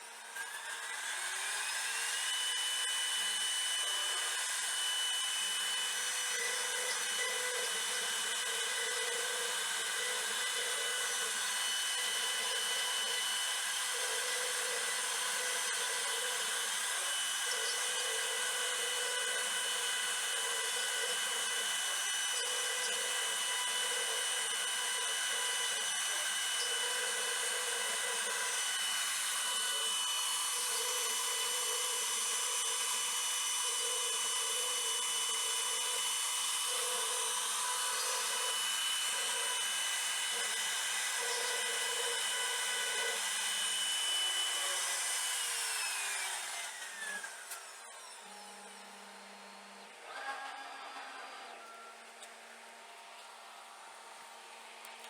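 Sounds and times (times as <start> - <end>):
bit cutting wood: 0.0 - 52.4
router spindle whining: 0.0 - 55.0.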